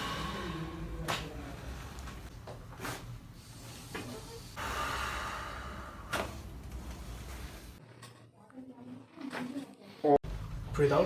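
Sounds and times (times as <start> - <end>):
person breathing out: 0.0 - 1.1, 4.6 - 6.4.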